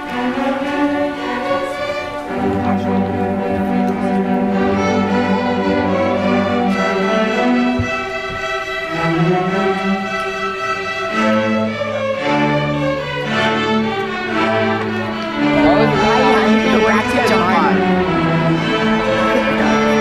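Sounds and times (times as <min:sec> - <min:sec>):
cellos: 0:00.0 - 0:20.0
violins: 0:00.0 - 0:20.0.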